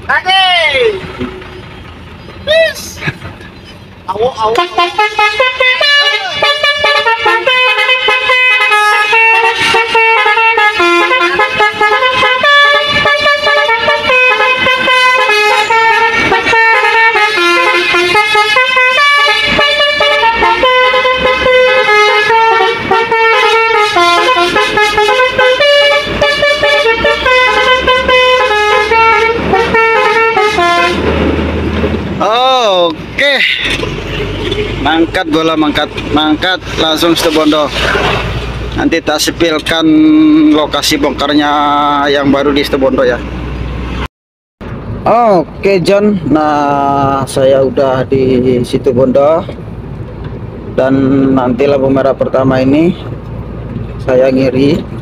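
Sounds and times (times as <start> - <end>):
low engine rumble: 0.0 - 7.8
musical truck horn melody: 4.5 - 31.2.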